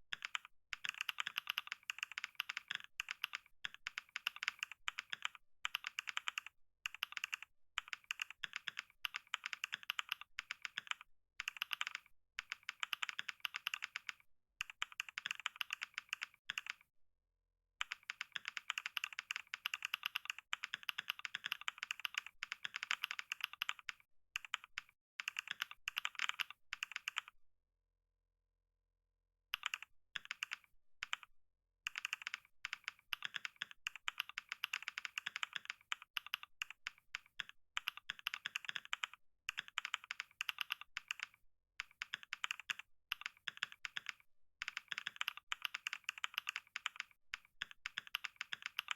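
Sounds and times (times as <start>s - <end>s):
fast typing on keyboard: 0.1s - 16.9s, 17.8s - 27.4s, 29.6s - 31.3s, 31.9s - 48.9s.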